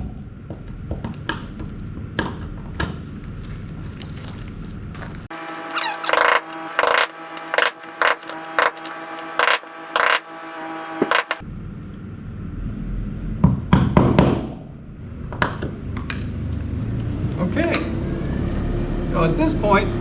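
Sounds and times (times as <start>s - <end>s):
hand tool scraping wood: 5.3s - 11.4s
motor hum: 5.3s - 11.4s.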